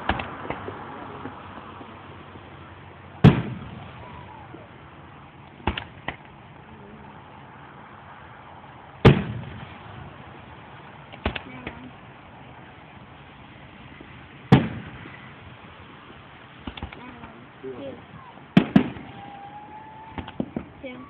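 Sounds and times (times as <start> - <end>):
small firework pops: 0.0 - 2.0, 5.5 - 6.4, 11.1 - 11.8, 16.6 - 17.1, 18.6 - 19.4, 20.1 - 20.7
fireworks booming: 0.0 - 2.3, 3.2 - 6.4, 9.0 - 21.0.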